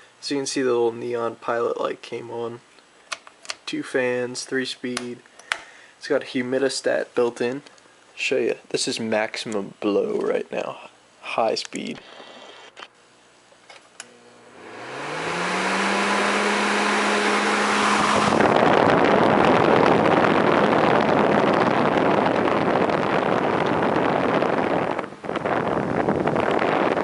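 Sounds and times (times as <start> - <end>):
fan motor hum: 9.5 - 27.0
rush of blown air: 14.6 - 27.0.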